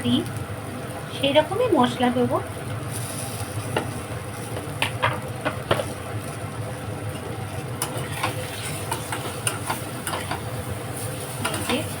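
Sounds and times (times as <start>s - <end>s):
low kitchen hum: 0.0s - 12.0s
metal spoon scraping in pot: 7.2s - 12.0s.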